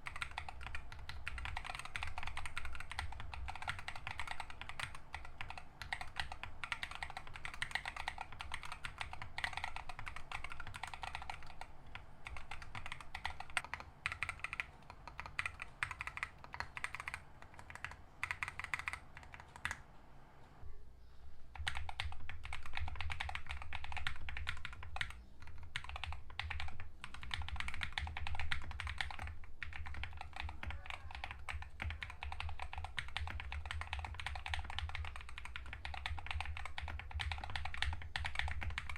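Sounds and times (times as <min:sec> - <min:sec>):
mechanical keyboard typing: 0:00.0 - 0:19.8, 0:21.5 - 0:38.9.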